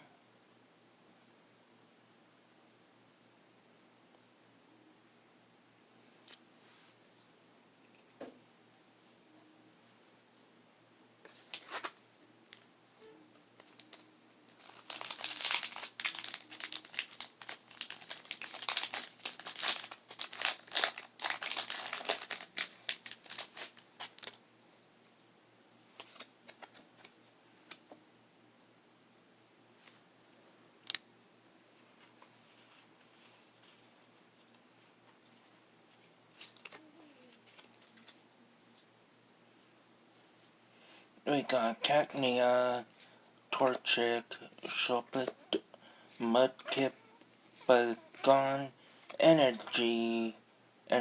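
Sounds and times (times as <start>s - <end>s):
foil wrapper crinkling and tearing: 13.6s - 24.4s.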